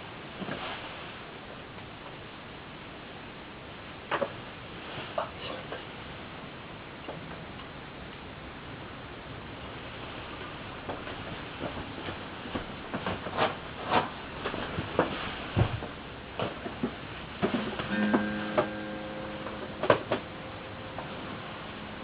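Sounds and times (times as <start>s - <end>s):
low electrical hum: 0.0s - 22.0s.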